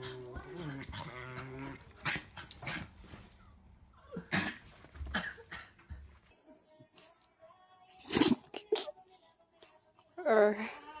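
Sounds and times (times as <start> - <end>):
dog sneezing: 8.0 - 8.5.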